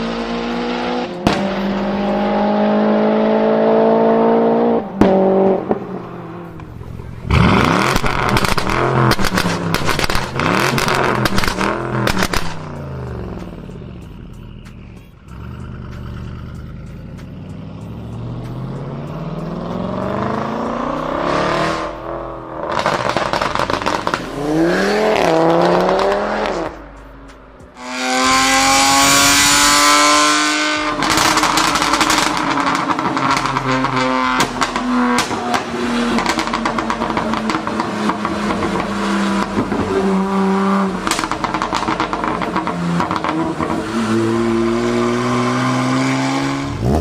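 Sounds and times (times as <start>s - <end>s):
car engine revving: 0.0s - 47.0s
exhaust crackling pops: 6.6s - 12.8s, 22.7s - 24.3s, 30.9s - 39.9s.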